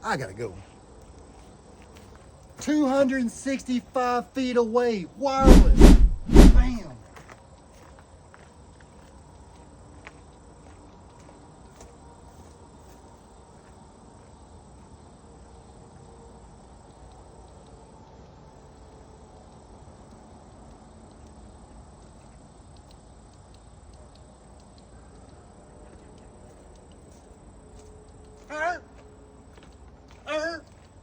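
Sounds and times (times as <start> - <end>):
low rumble: 5.4 - 6.9
faint ticks: 7.2 - 31.0.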